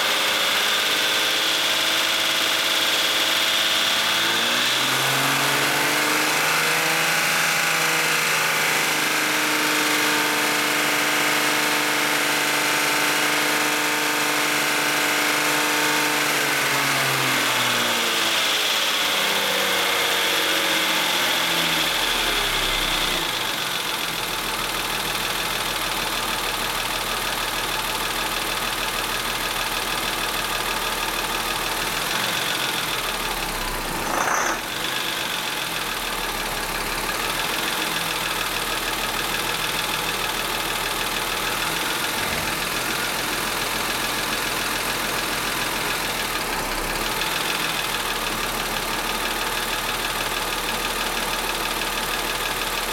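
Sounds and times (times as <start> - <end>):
car engine revving: 31.2 - 48.8.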